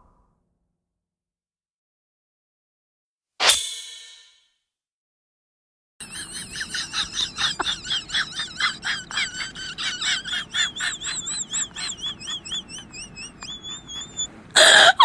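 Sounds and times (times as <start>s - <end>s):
birds chirping and warbling: 10.3s - 14.3s.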